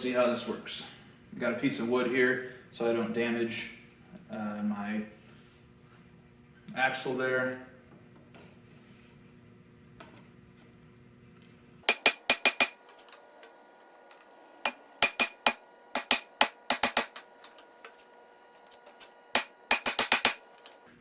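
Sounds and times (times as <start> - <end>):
hammer striking plastic pipe tool: 11.9 - 12.8, 14.6 - 17.3, 19.4 - 20.4.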